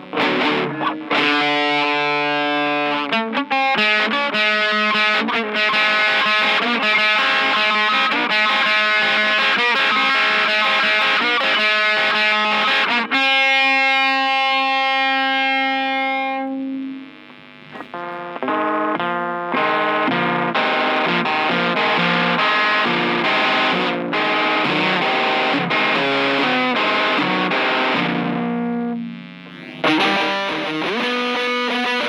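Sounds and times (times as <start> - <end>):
distorted electric guitar: 0.0 - 32.0.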